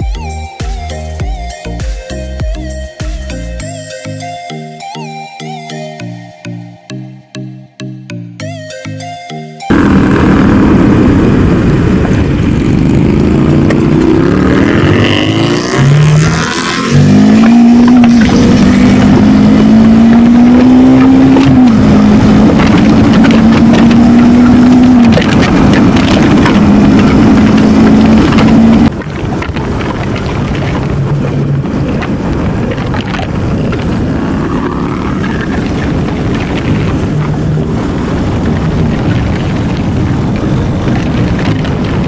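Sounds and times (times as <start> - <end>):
motorcycle engine accelerating: 9.7 - 42.0.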